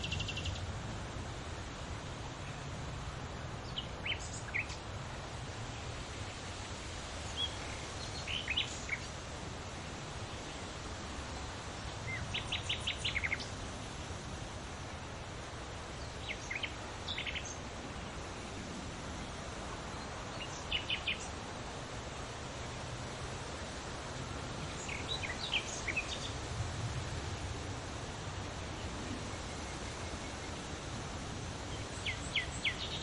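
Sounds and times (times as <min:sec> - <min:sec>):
leaves rustling in wind: 0:00.0 - 0:33.0
small birds chirping: 0:03.6 - 0:04.9, 0:06.3 - 0:09.2, 0:11.8 - 0:13.6, 0:15.8 - 0:19.3, 0:19.9 - 0:21.4, 0:24.6 - 0:26.5, 0:31.6 - 0:33.0.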